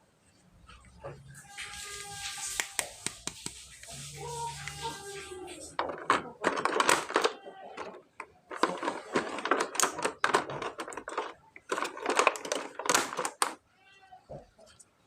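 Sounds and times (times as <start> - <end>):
plastic packaging crinkling: 1.6 - 13.6.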